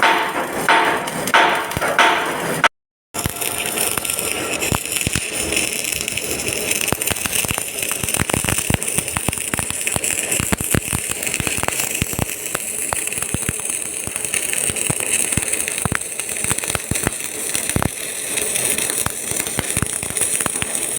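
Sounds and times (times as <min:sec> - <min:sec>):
arc welding crackling hiss: 0:03.2 - 0:20.9.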